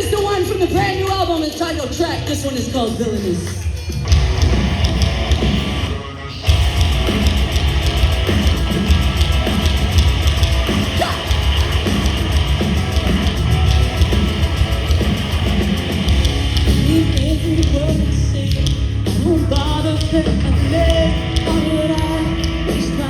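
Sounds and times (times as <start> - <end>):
distorted electric guitars: 0.0 - 23.0
drums: 0.0 - 23.0
heavy rock band playing: 0.0 - 23.0.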